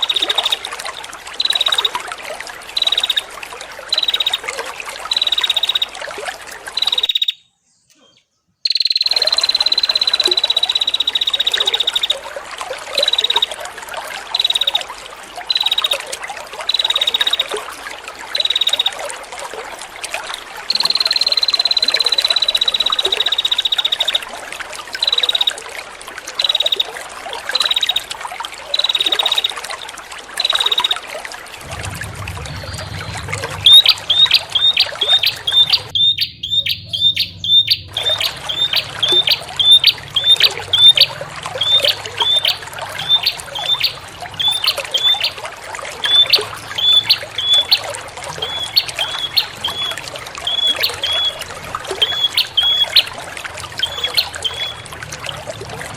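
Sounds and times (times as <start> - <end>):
trickle of running water: 0.0 - 7.4, 8.6 - 55.9
bird whistling calls: 1.4 - 2.0, 2.8 - 3.3, 3.9 - 4.5, 5.1 - 6.0, 6.8 - 7.5, 8.1 - 12.2, 13.0 - 13.5, 14.4 - 14.9, 15.5 - 16.1, 16.7 - 17.5, 18.3 - 19.0, 20.7 - 24.2, 25.0 - 25.6, 26.4 - 26.9, 27.6 - 28.1, 28.8 - 29.6, 30.4 - 31.0, 32.6 - 45.4, 46.0 - 51.4, 52.0 - 53.1, 53.8 - 54.9
low hum: 31.6 - 44.4.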